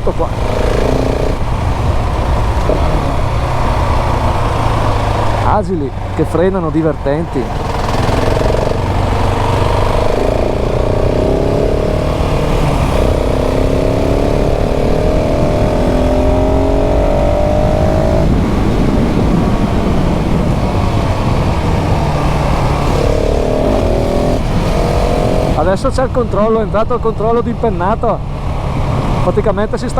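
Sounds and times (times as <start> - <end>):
motorcycle engine accelerating: 0.0 - 29.9.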